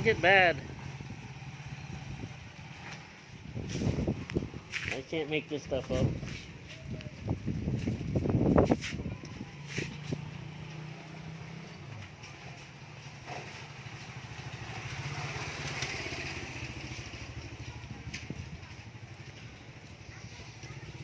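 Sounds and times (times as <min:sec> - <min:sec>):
motorcycle engine idling: 0:12.6 - 0:21.0.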